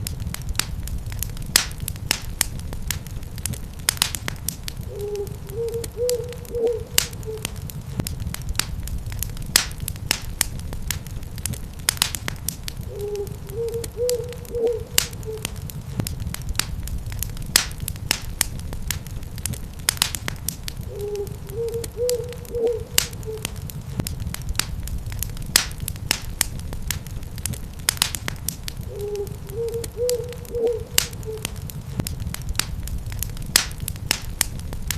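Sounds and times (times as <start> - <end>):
wood fire crackling: 0.0 - 34.9
owl hooting: 4.8 - 7.6, 12.8 - 15.6, 20.8 - 23.6, 28.9 - 31.6.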